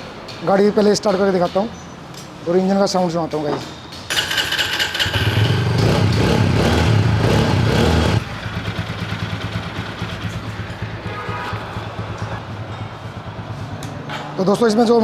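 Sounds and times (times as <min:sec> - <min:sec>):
motorcycle engine starting and idling: 0:04.1 - 0:14.2.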